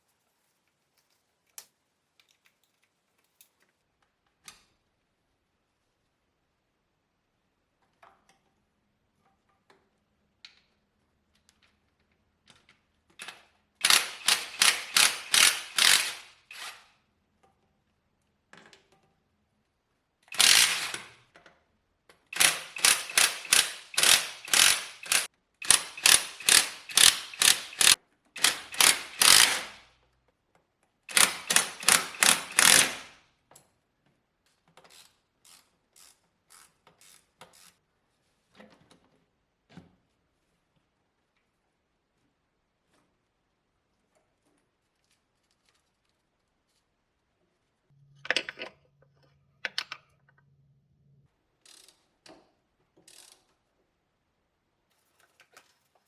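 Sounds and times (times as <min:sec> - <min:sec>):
ratchet wrench clicking: 0:13.8 - 0:16.7, 0:20.3 - 0:21.1, 0:22.4 - 0:29.8, 0:31.1 - 0:33.1, 0:34.9 - 0:37.8, 0:51.7 - 0:52.0, 0:53.1 - 0:53.5.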